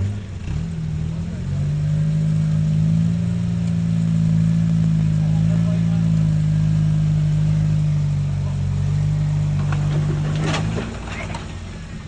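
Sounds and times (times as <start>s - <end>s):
off-road vehicle engine running: 0.0s - 12.0s.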